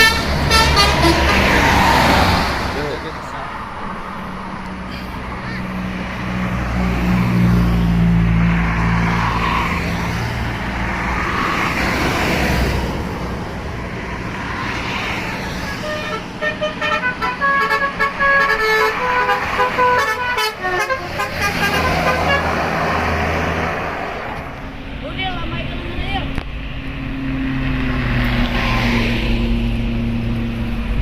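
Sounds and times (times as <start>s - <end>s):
multi-tone musical bus horn: 0.0s - 1.8s, 15.6s - 22.9s
bus engine and road noise: 0.0s - 31.0s.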